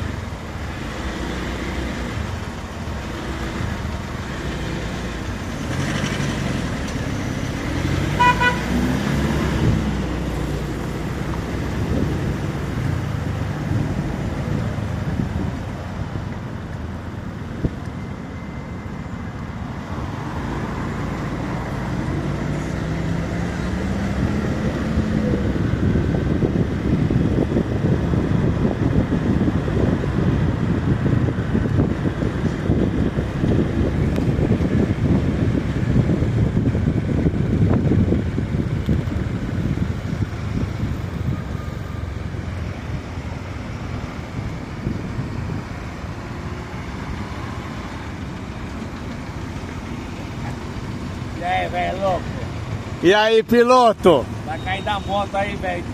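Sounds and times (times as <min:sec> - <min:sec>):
car engine accelerating: 0:00.0 - 0:15.5, 0:19.8 - 0:41.3
road and wind noise: 0:00.0 - 0:55.9
car horn toot: 0:08.2 - 0:08.8.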